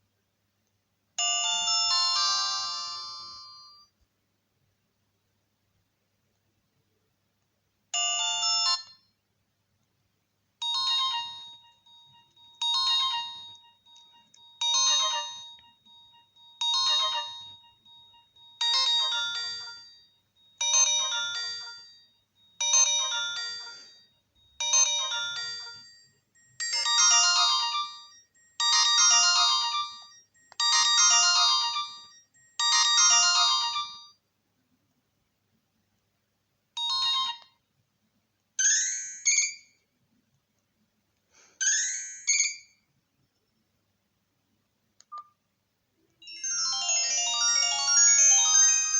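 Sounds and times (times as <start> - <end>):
mobile phone ringtone: 1.2 - 3.9, 8.0 - 9.1, 10.6 - 34.2, 36.8 - 37.6, 46.2 - 48.9.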